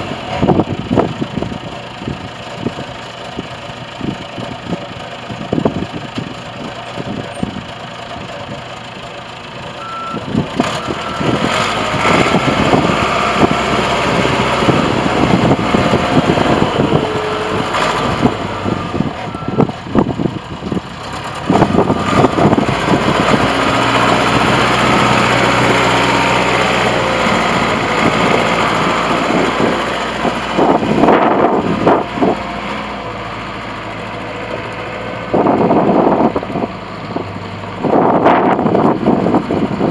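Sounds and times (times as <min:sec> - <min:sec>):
backhoe diesel engine revving: 0:00.0 - 0:39.9
backup alarm beeping: 0:09.8 - 0:10.2.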